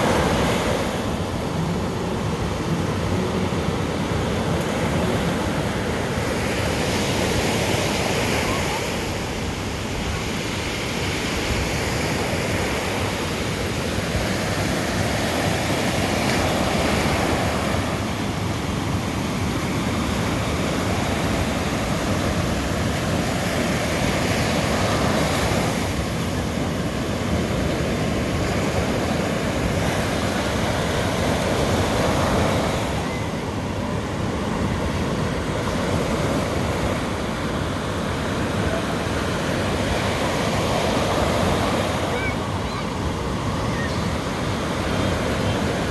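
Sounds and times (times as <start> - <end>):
surf breaking on beach: 0.0 - 45.9.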